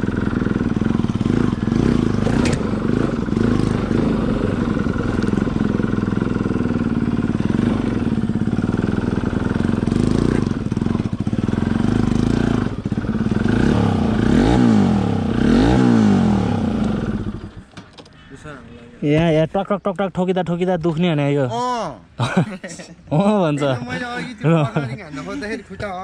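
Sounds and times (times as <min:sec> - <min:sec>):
motorcycle engine revving: 0:00.0 - 0:17.8.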